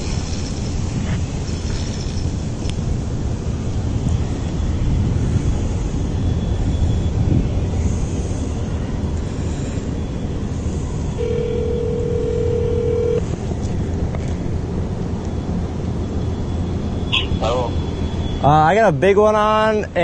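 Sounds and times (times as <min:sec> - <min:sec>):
wind buffeting microphone: 0:00.0 - 0:12.0
phone ringback tone: 0:11.2 - 0:13.2.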